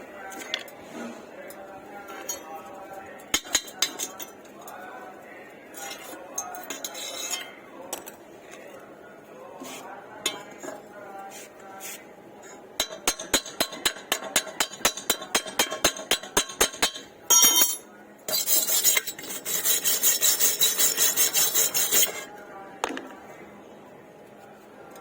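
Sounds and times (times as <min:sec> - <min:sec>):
chipping hammer tapping metal: 0:12.8 - 0:17.8
wire brush scrubbing metal: 0:18.3 - 0:22.3.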